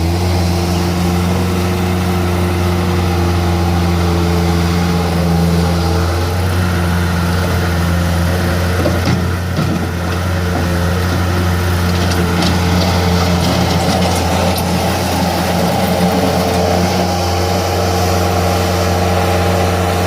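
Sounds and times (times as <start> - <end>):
diesel engine running: 0.0 - 20.0
short knocks and rattles: 8.8 - 14.7.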